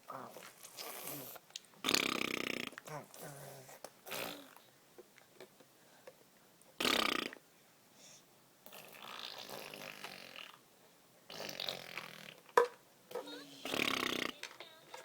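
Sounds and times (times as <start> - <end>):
baby making throaty burp-like noises: 4.0 - 4.6, 11.3 - 12.5, 13.2 - 14.5.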